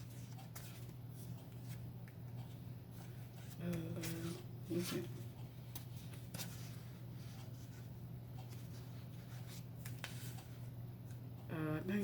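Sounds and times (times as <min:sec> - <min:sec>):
steady low hum: 0:00.0 - 0:12.0
cards rustling: 0:02.9 - 0:10.6.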